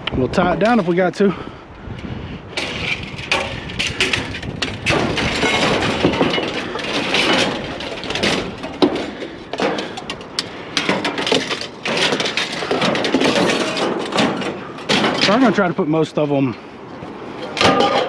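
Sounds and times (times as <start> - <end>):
loud metal bang: 2.6 - 9.9
metal bicycle frames clanking: 2.6 - 15.8, 17.4 - 18.0.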